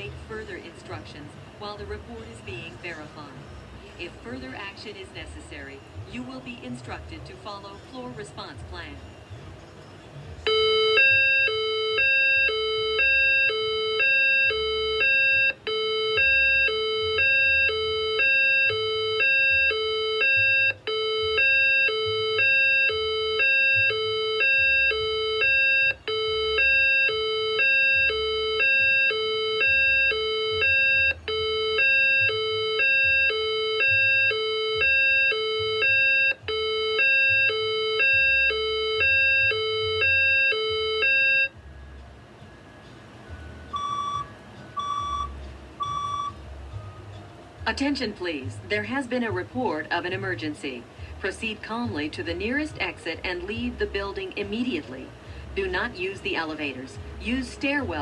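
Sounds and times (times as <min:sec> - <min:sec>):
fire alarm two-note tone: 0:10.5 - 0:41.6, 0:43.7 - 0:46.4.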